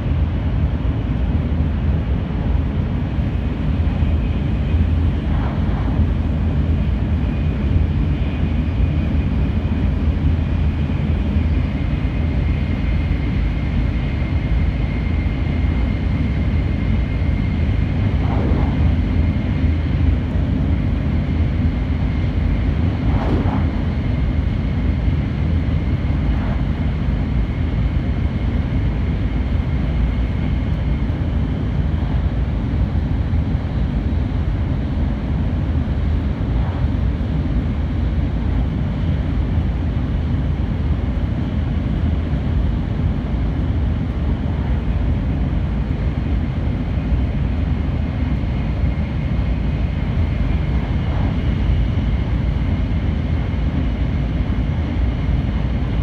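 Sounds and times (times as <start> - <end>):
train rumble and rush: 0.0 - 56.0
faint high whine: 15.3 - 28.4, 49.0 - 54.3
brief swishes: 22.9 - 24.1.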